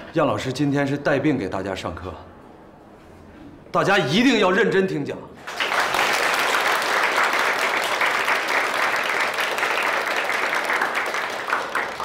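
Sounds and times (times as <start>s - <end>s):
crowd applauding: 5.4s - 12.0s.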